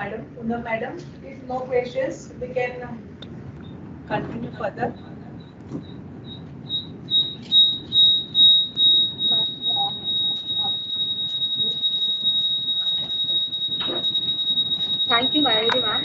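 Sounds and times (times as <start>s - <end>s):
high-pitched electronic beeping: 5.0s - 16.0s
steady electronic whistle: 5.4s - 16.0s.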